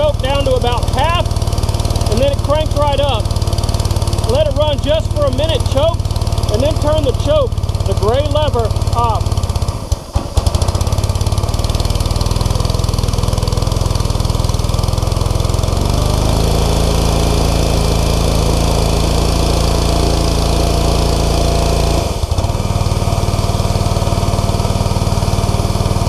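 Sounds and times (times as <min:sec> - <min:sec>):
pressure washer engine running: 0:00.0 - 0:26.0.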